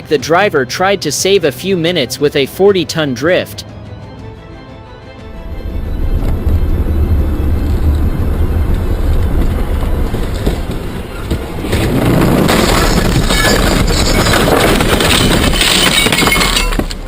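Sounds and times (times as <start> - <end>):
low vehicle rumble: 5.2 - 12.6.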